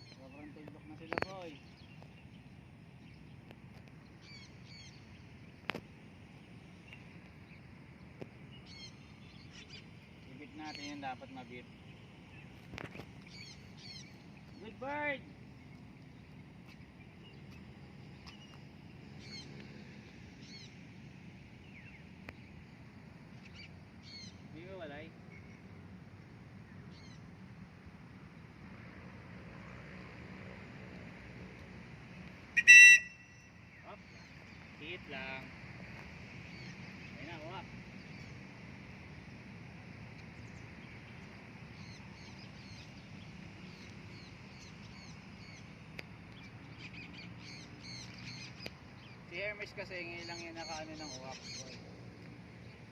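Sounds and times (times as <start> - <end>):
birds chirping faintly: 0.0 - 52.9
low background noise: 0.0 - 52.9
low steady background noise: 0.0 - 52.9
high bird chirps: 4.2 - 5.6, 32.6 - 34.6
gliding bird call: 32.6 - 33.5.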